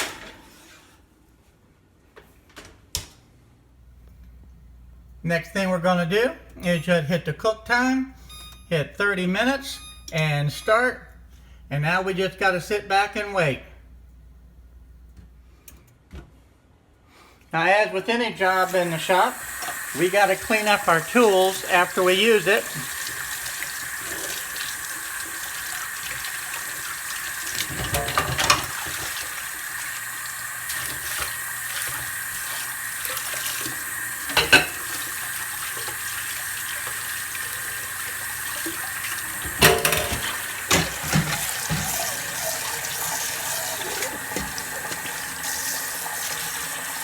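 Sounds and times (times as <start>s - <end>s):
tap running into a sink: 18.6s - 47.0s
utensils clinking against sink: 18.6s - 47.0s.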